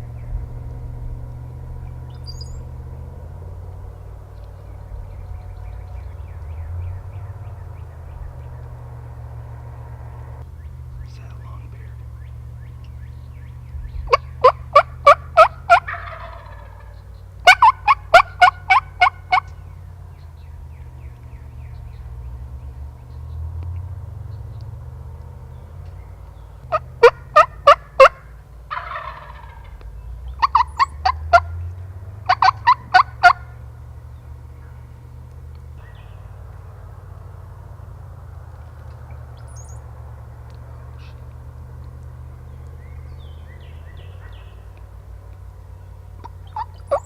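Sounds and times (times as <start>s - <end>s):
wild turkey yelping: 1.8s - 2.8s, 11.0s - 19.8s, 26.6s - 33.7s, 46.2s - 47.0s
faint rolling turkey call: 13.9s - 19.8s, 26.7s - 33.7s, 46.2s - 47.0s.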